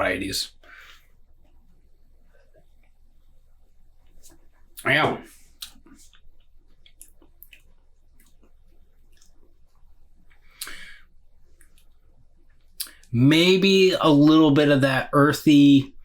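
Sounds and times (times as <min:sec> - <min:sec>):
mouth clicks and lip smacks: 0:05.5 - 0:13.1
short breathy sound: 0:10.5 - 0:11.1.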